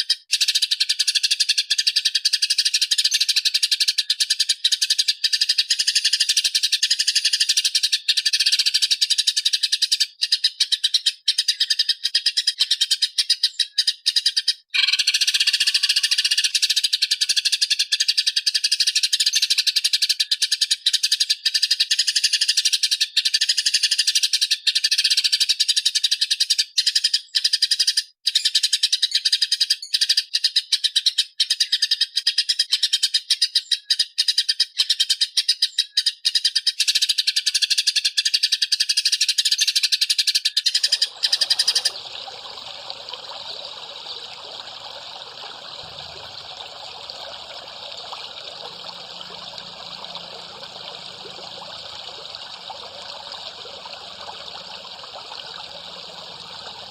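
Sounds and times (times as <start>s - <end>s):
songbird chattering song: 40.5s - 56.9s.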